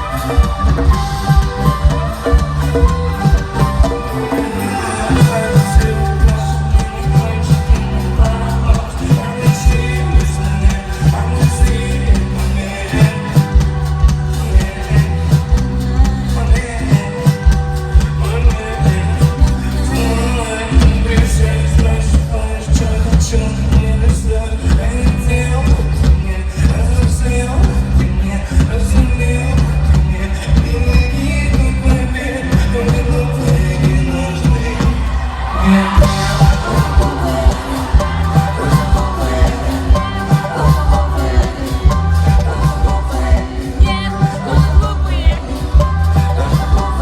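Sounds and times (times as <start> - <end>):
person singing: 0.0 - 47.0
bass line and kick drum: 5.0 - 35.1, 35.8 - 47.0
person rapping: 43.8 - 46.0.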